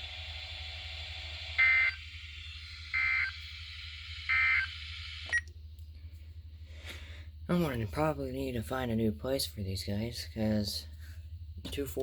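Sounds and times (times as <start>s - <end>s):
low hum and hiss: 0.0s - 12.0s
buzzy digital data bursts: 1.5s - 5.3s.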